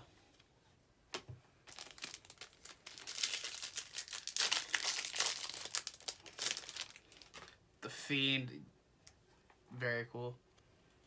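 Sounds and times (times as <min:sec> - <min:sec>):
wrapper crinkling and tearing: 0:01.6 - 0:07.6.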